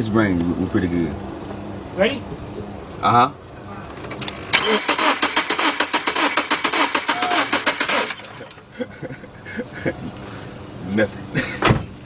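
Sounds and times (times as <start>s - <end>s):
engine starter cranking: 4.1s - 8.6s.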